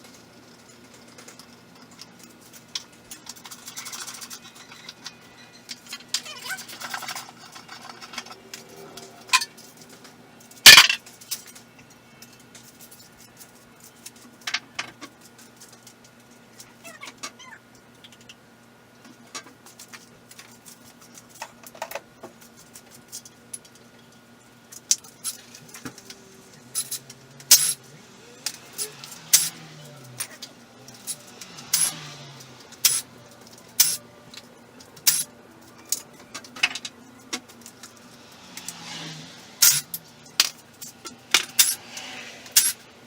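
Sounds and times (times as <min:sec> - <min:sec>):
metal tools clinking: 0:00.5 - 0:10.0, 0:10.7 - 0:11.6, 0:26.7 - 0:27.8, 0:28.4 - 0:38.0, 0:39.6 - 0:42.8
sharp metal clank: 0:26.8 - 0:27.8, 0:29.3 - 0:29.5, 0:31.7 - 0:32.0, 0:32.8 - 0:33.0, 0:33.8 - 0:34.0, 0:35.1 - 0:35.3, 0:39.6 - 0:40.5, 0:41.4 - 0:41.9, 0:42.6 - 0:42.8.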